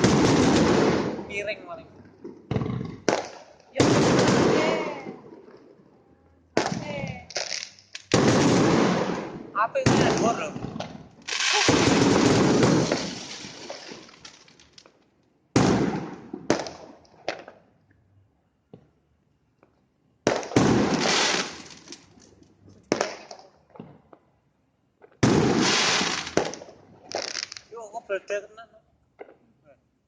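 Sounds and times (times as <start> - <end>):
fireworks bursting and crackling: 0.0 - 2.4, 3.0 - 5.8, 6.6 - 17.5, 20.2 - 23.8, 25.0 - 28.1.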